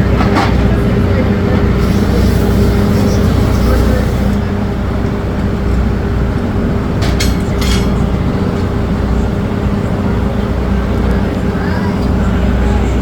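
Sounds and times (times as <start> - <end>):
low machine drone: 0.0 - 13.0.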